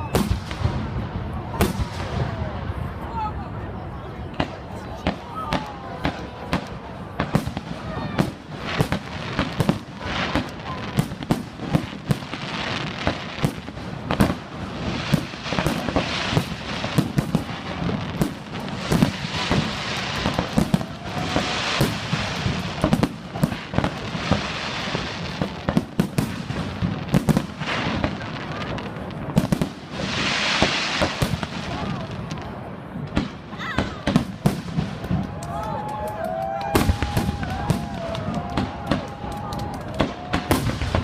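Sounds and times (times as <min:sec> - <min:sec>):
firework crackling: 0:00.0 - 0:03.5, 0:04.3 - 0:41.0.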